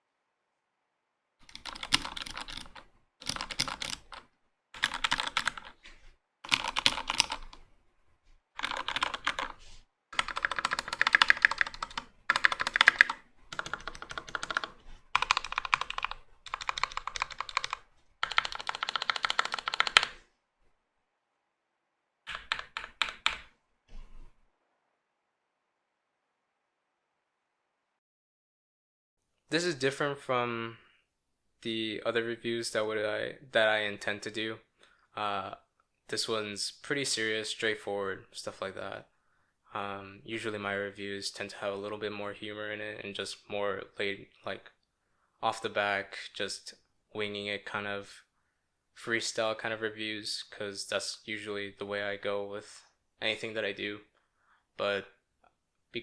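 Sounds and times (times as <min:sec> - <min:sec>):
mechanical keyboard typing: 0:01.4 - 0:04.2, 0:04.8 - 0:05.8, 0:06.5 - 0:07.6, 0:08.6 - 0:09.6, 0:10.2 - 0:20.2, 0:22.3 - 0:23.5.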